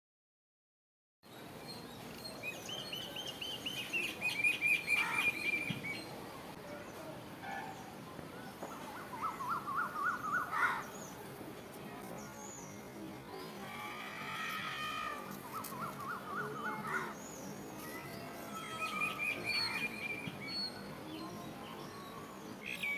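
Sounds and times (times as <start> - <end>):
birds singing: 1.3 - 6.2, 7.7 - 11.3, 15.2 - 22.9.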